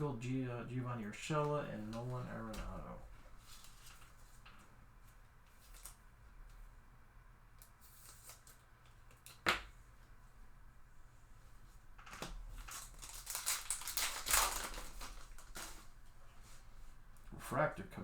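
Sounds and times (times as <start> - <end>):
rustling crinkling handling: 1.3 - 6.0, 12.0 - 17.3
cards being flipped through: 5.5 - 6.0, 7.6 - 9.7.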